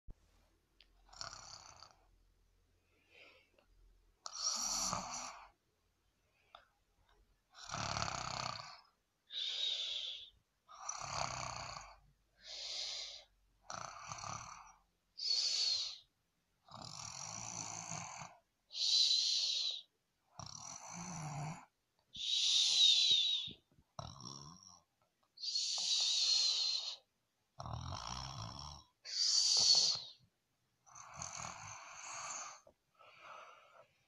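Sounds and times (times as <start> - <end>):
person snoring: 1.1 - 2.0, 4.2 - 5.6, 7.5 - 16.0, 16.7 - 24.8, 25.4 - 27.0, 27.6 - 30.2, 30.8 - 33.8.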